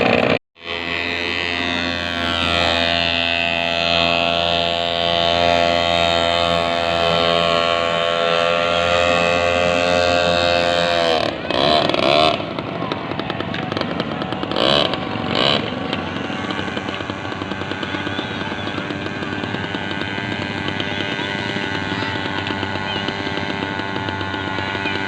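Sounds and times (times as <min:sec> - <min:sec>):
busy rumble: 0:00.0 - 0:25.0
droning tone falling in pitch: 0:00.0 - 0:25.0
short wavering horn blasts: 0:00.6 - 0:12.5.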